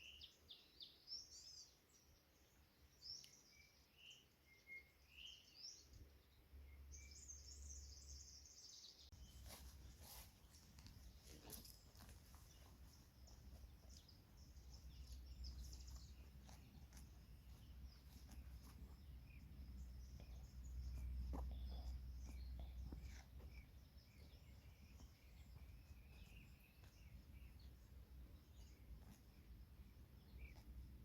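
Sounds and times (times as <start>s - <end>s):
bird chirps and calls: 6.8s - 30.8s.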